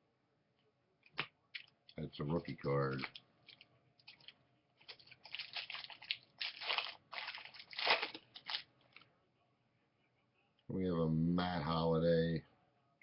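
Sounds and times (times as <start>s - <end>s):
trading cards and wrapper rustling: 2.3s - 9.0s.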